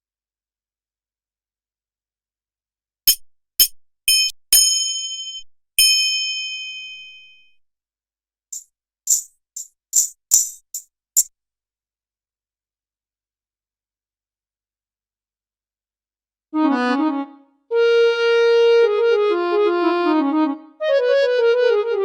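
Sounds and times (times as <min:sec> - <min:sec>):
metallic percussion hits ringing: 0:03.1 - 0:07.4
bright jingly hits: 0:03.1 - 0:07.6, 0:08.6 - 0:10.8.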